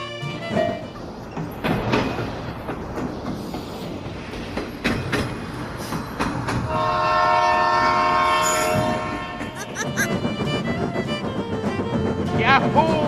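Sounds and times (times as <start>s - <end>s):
train rumbling on rails: 0.0s - 13.0s
wheels clacking over rail joints: 0.0s - 13.0s
loud train horn: 6.7s - 10.2s.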